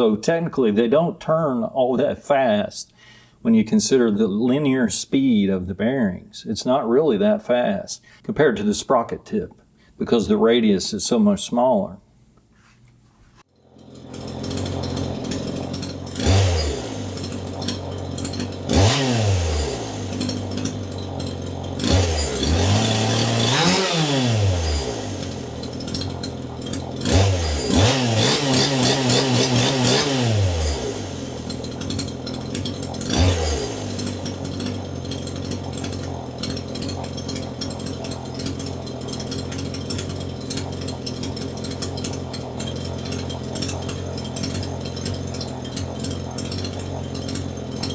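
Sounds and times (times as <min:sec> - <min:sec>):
chainsaw idling and revving: 0:13.5 - 0:47.9.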